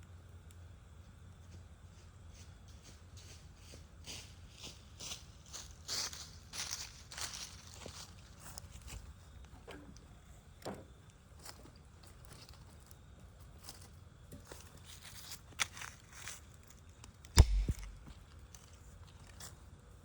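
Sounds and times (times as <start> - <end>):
wood fire crackling: 17.3 - 18.6
loud dull thump: 17.4 - 18.1.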